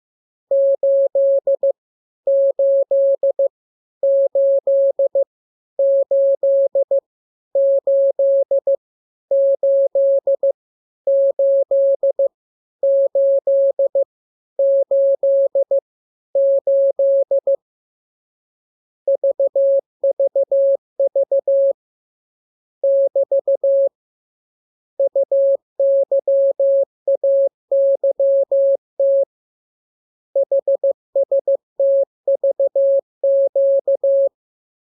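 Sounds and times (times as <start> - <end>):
morse code beeps: 30.4 - 34.3.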